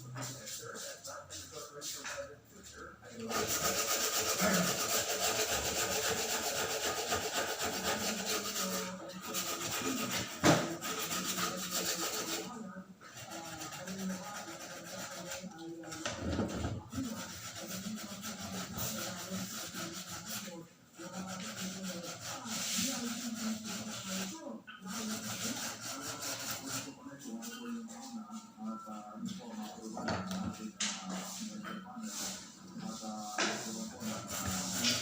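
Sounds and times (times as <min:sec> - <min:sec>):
sandpaper rasping: 0:03.2 - 0:12.5, 0:13.2 - 0:15.5, 0:17.0 - 0:26.9, 0:34.0 - 0:35.0.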